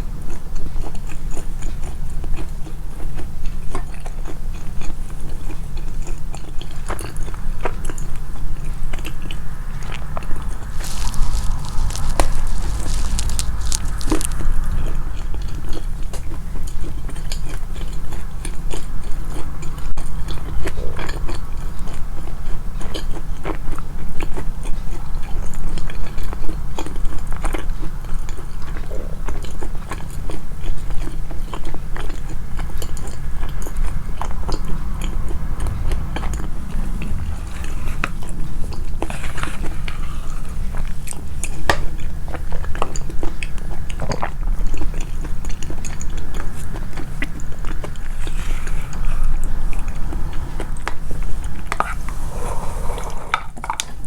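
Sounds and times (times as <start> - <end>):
person chewing and biting: 8.9 - 15.4
wet mouth sounds: 9.0 - 16.3.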